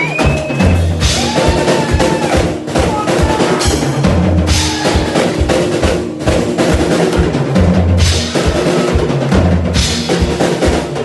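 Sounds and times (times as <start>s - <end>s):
drum kit solo: 0.0s - 11.0s
cymbals ringing: 2.9s - 5.3s.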